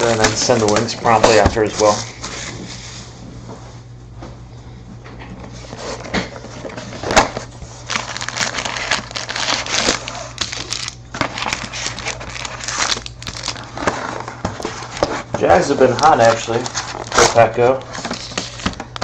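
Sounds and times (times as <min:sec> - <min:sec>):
packaging crinkling: 0:05.7 - 0:19.0.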